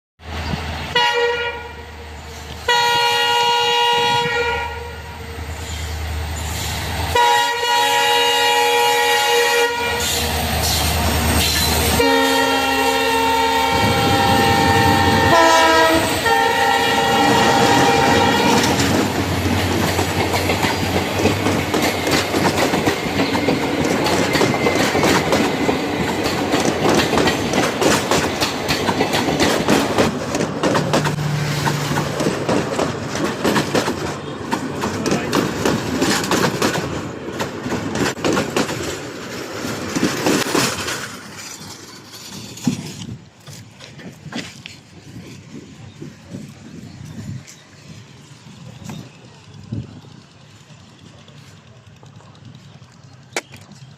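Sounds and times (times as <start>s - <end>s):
train passing at speed: 0.2s - 53.9s
train horn blasts: 0.9s - 1.9s, 2.6s - 5.3s, 7.1s - 10.3s, 11.9s - 18.9s
wheels clattering over rail joints: 13.1s - 53.9s.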